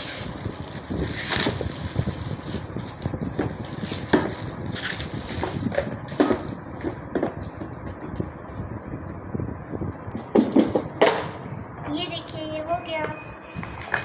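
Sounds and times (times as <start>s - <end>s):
packaging tearing: 0.0s - 5.7s
gift packaging rustling and crinkling: 0.0s - 7.6s.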